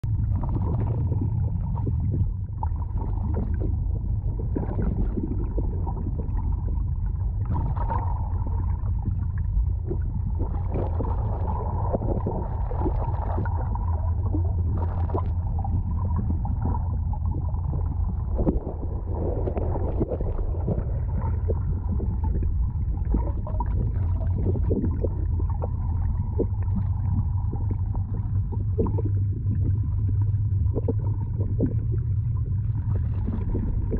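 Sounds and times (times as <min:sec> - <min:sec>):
boat engine humming: 0:00.1 - 0:33.9.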